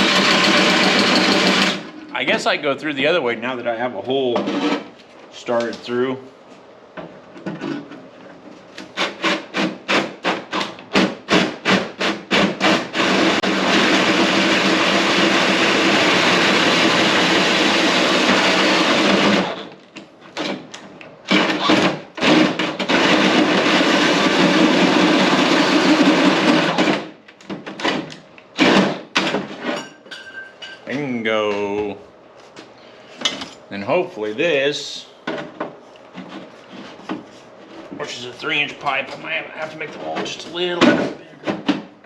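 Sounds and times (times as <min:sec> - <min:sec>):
power drill boring: 0:00.0 - 0:01.9, 0:11.3 - 0:19.7, 0:21.3 - 0:27.0.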